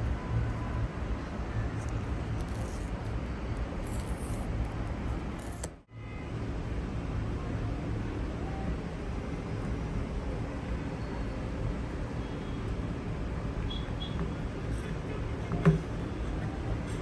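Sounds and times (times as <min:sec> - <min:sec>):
traffic rumble: 0:00.0 - 0:17.0
handling clicks and crackles: 0:01.8 - 0:05.8.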